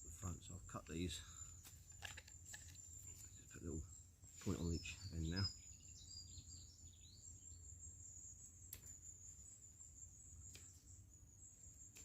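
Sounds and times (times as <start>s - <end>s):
insects trilling: 0.0s - 12.0s.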